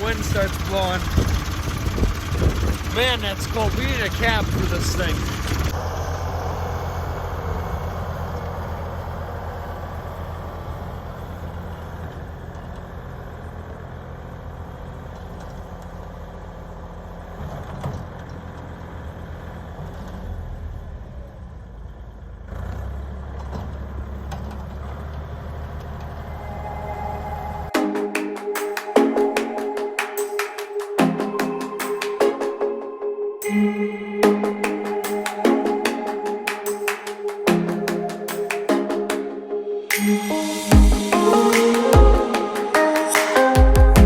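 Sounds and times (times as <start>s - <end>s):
snow blower rushing: 0.0s - 8.6s
tractor engine drone: 0.0s - 44.0s.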